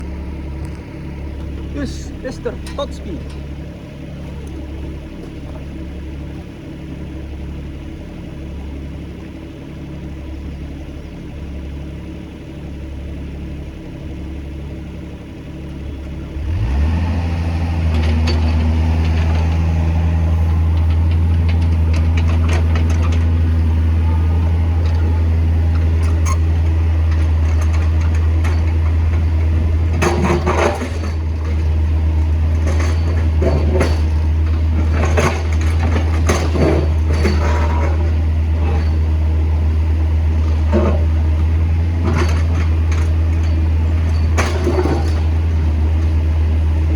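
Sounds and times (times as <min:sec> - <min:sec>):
diesel engine idling and revving: 0:00.0 - 0:46.9
metal knocks and clanks: 0:02.5 - 0:03.6, 0:17.9 - 0:39.3, 0:40.4 - 0:46.1.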